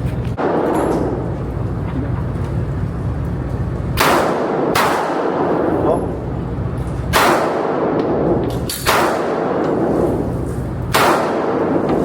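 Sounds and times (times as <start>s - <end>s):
steady low hum: 0.0s - 12.0s
gunshots: 4.0s - 5.6s, 7.1s - 8.0s, 8.7s - 9.6s, 10.9s - 11.9s.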